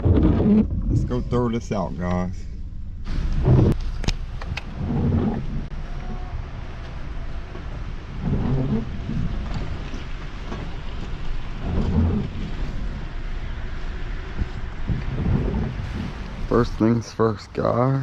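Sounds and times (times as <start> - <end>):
heavy rain: 5.6 - 17.4.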